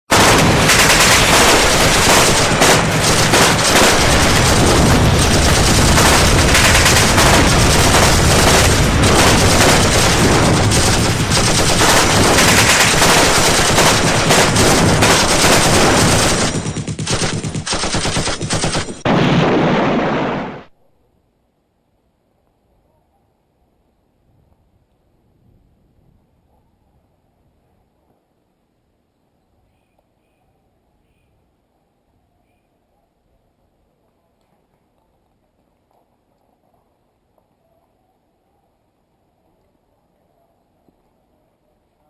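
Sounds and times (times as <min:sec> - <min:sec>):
rapid automatic gunfire: 0:00.1 - 0:20.7.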